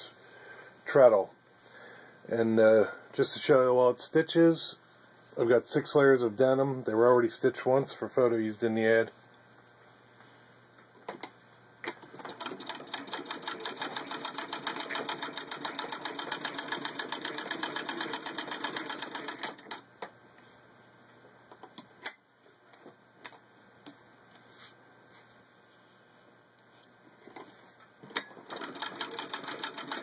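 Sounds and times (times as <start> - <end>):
sewing machine clattering: 11.9 - 19.8, 28.0 - 30.0.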